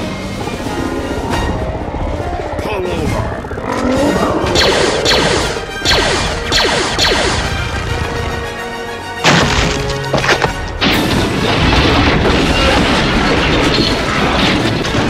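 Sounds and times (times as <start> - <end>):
action film music: 0.0 - 15.0
crashing impacts: 9.2 - 15.0.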